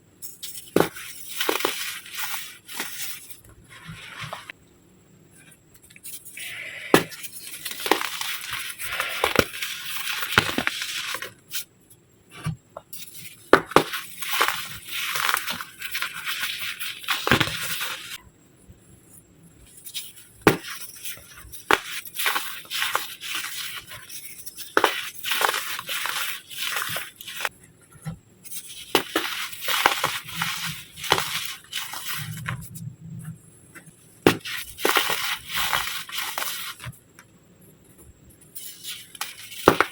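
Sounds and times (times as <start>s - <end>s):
baking soda crunching and crackling: 0.6s - 4.5s, 6.4s - 11.7s, 13.2s - 18.2s, 19.8s - 27.5s, 28.5s - 32.8s, 34.2s - 36.9s, 38.6s - 39.9s.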